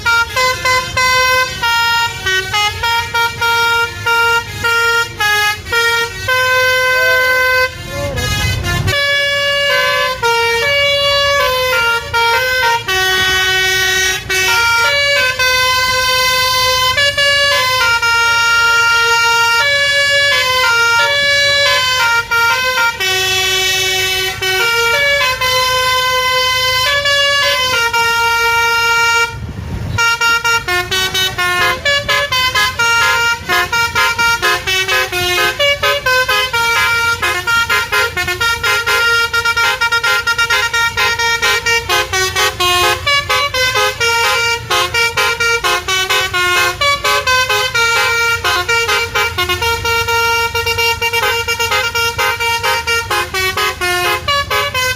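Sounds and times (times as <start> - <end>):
multi-tone bus horn melody: 0.0 - 54.9.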